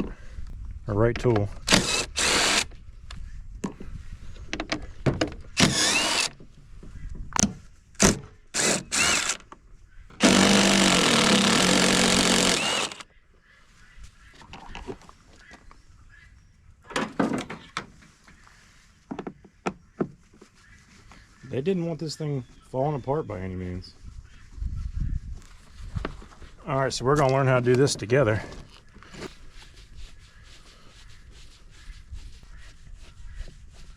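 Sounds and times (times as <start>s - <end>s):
cordless impact drill: 1.6s - 2.7s, 5.6s - 6.4s, 8.0s - 9.4s, 10.2s - 13.0s.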